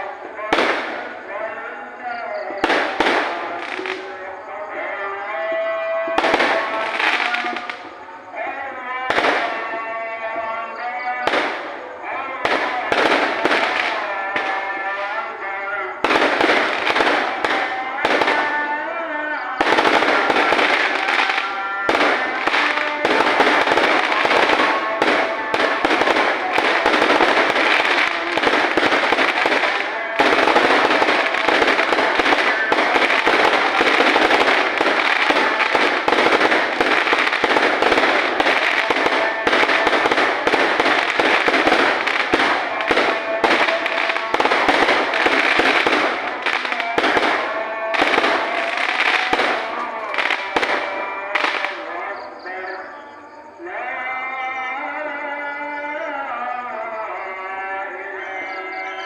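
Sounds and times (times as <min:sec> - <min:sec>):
fireworks and firecrackers banging: 0:00.0 - 0:59.0.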